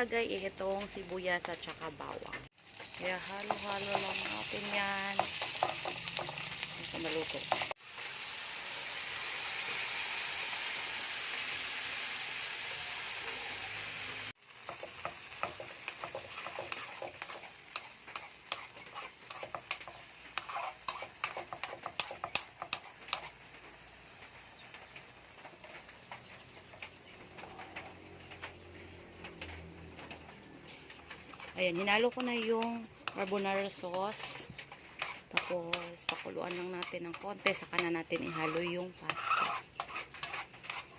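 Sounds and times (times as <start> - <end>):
food sizzling in hot oil: 0.0 - 28.8, 30.9 - 40.9
utensil scraping a pan: 14.7 - 23.5, 30.6 - 40.9.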